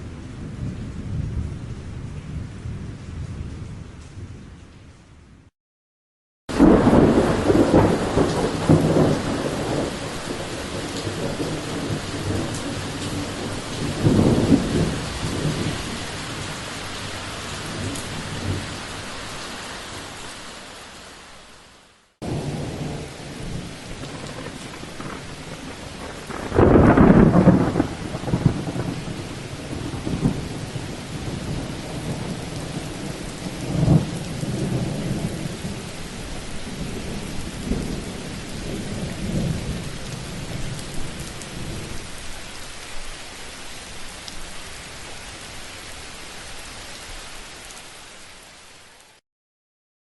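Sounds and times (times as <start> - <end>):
steady rain: 0.0 - 5.4, 6.5 - 49.2
thunder rumbling: 6.5 - 18.8, 22.2 - 42.0.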